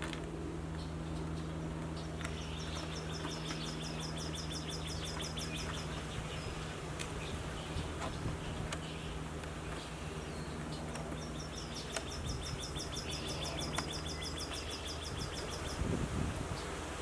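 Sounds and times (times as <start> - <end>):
small animal chirping trill: 11.1 - 15.9.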